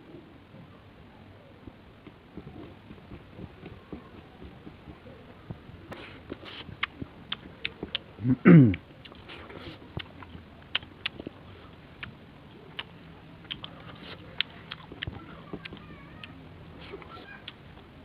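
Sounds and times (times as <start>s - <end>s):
chewing crisp food: 2.0s - 17.9s
mouth clicks: 12.0s - 17.8s.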